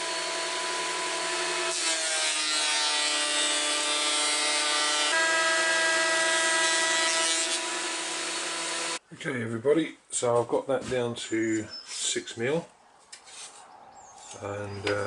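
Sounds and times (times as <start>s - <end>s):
electric planer motor whining: 0.0s - 2.4s, 3.5s - 9.0s.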